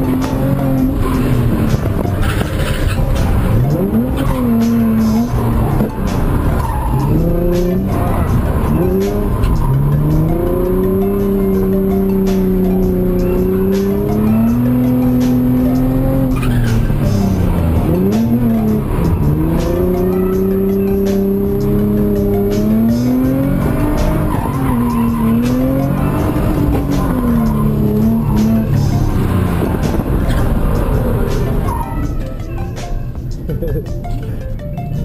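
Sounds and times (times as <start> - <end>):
car engine revving high: 0.0 - 31.9
tyres squealing: 0.2 - 32.4.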